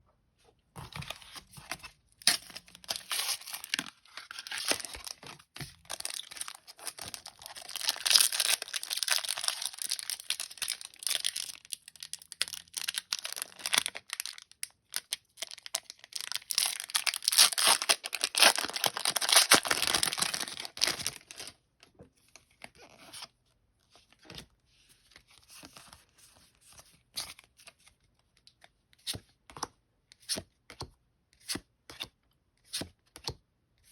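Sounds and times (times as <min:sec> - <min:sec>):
foil wrapper tearing and crinkling: 0:05.9 - 0:21.5.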